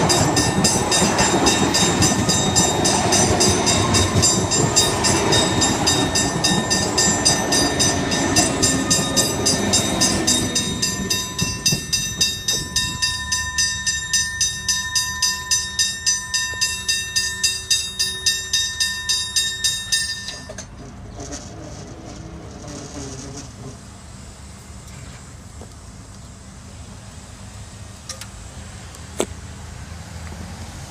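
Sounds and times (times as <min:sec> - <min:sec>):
bell struck rapidly: 0:00.0 - 0:20.5
electric train rumble: 0:00.0 - 0:30.9.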